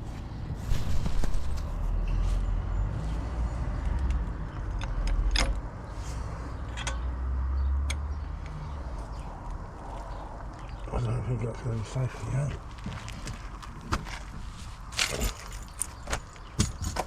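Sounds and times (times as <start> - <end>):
clicks and knocks of metal: 6.7 - 7.0.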